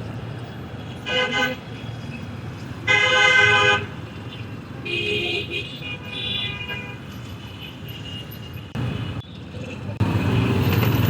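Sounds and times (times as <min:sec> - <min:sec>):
low rumble of engines: 0:00.0 - 0:11.0
vehicle horns honking: 0:01.0 - 0:01.7, 0:02.8 - 0:09.2.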